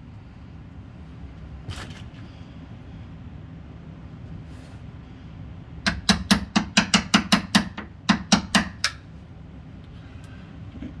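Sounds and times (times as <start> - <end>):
hammer tapping wood chisel: 5.9 - 9.0.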